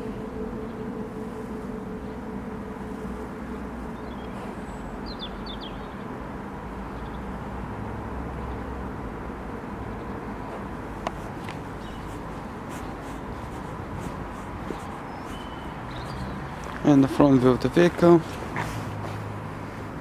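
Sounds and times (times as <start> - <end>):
distant traffic rumble: 0.0 - 20.0
small bird chirps: 11.2 - 16.8.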